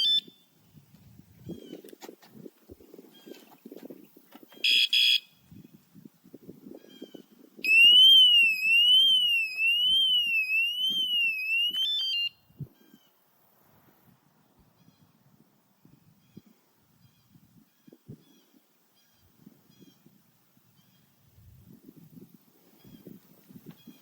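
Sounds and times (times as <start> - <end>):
bike alarm beeps and warbling siren: 4.6 - 5.3, 7.7 - 12.4.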